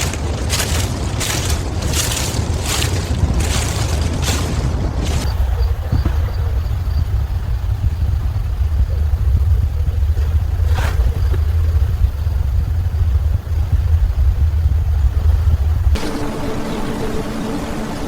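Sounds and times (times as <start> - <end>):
vehicle low rumble: 0.0 - 18.0
music: 16.0 - 18.0.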